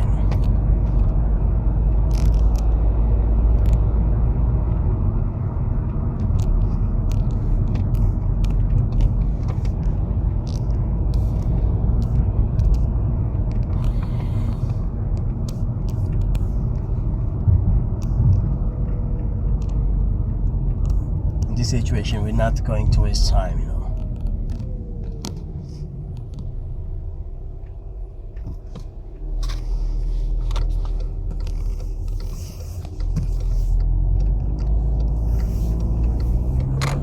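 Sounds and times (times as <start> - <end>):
car engine and road rumble: 0.0 - 37.0
light ticks: 5.8 - 26.6, 27.6 - 37.0.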